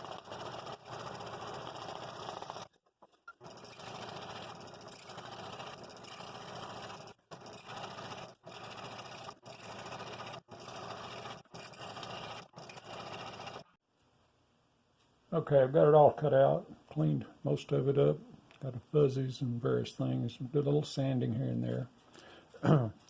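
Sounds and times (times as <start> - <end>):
scroll saw cutting wood: 0.0 - 13.8.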